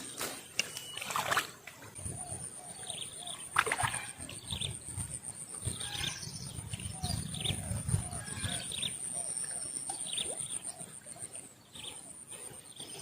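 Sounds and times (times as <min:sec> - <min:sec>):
splashing: 0:00.3 - 0:01.8, 0:03.6 - 0:04.2.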